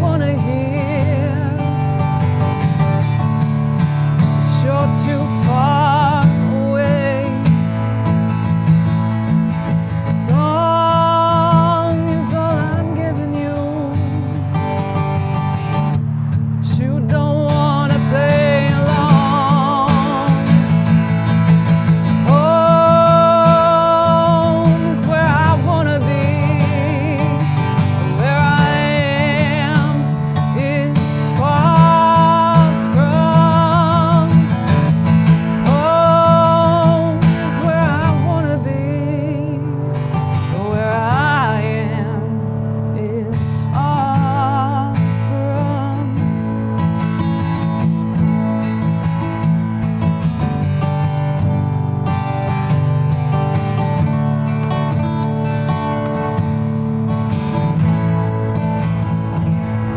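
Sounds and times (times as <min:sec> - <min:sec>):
strummed acoustic guitar: 0:00.0 - 0:59.9
woman singing country song: 0:00.0 - 0:59.9.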